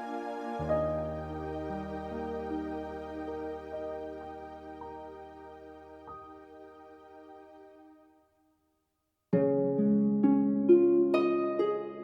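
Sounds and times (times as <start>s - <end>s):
quiet background music: 0.0s - 8.1s.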